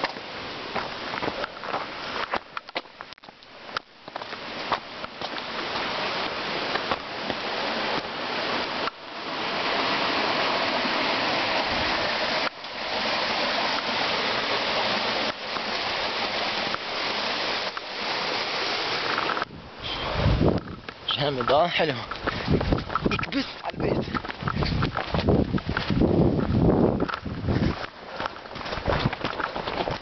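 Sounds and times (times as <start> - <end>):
rushing stream water: 0.0 - 30.0.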